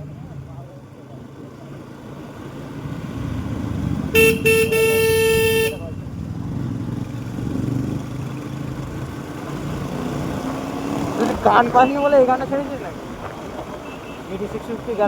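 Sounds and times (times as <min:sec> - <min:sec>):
road and engine noise: 0:00.0 - 0:15.0
vehicle horn toots: 0:04.1 - 0:06.0, 0:13.8 - 0:14.3.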